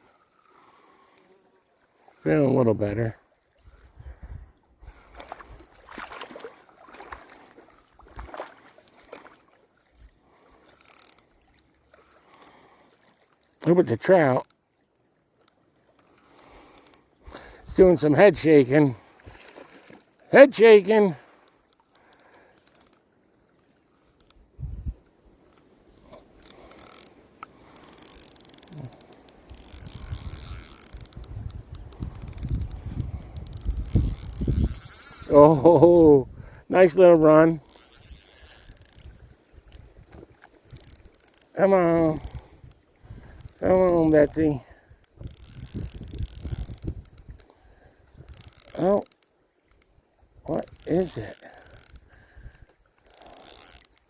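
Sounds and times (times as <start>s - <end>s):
water sloshing: 0.0s - 35.8s, 36.4s - 54.0s
fishing gear knocking and clicking: 5.1s - 6.3s, 8.1s - 9.4s, 10.6s - 11.4s, 12.2s - 12.6s, 14.2s - 14.6s, 15.4s - 17.1s, 17.7s - 18.9s, 19.6s - 20.3s, 21.4s - 23.1s, 24.0s - 24.5s, 26.3s - 47.6s, 48.2s - 54.0s.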